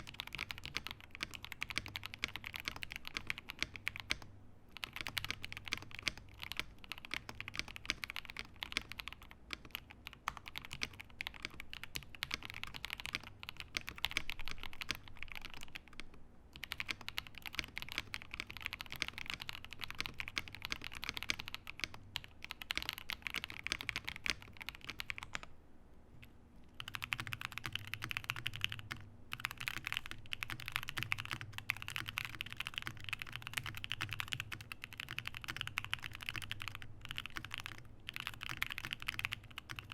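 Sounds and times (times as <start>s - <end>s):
fast typing on keyboard: 0.0s - 25.5s, 26.8s - 39.9s.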